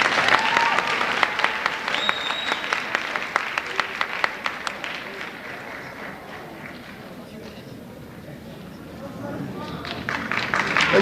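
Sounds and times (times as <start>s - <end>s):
audience applauding: 0.0s - 7.7s, 9.4s - 11.0s
whistle: 1.9s - 2.8s.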